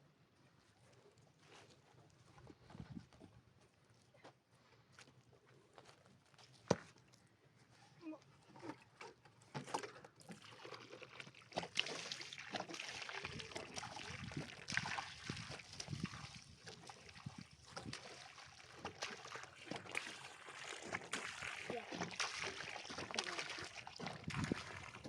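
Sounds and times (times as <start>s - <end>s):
wet sloshing and scraping: 8.4s - 25.0s.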